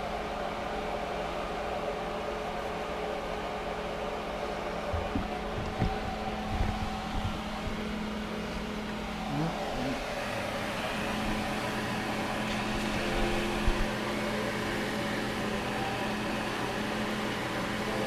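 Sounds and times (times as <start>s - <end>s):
electric motor humming: 4.7s - 18.0s
light knocks: 4.9s - 7.7s.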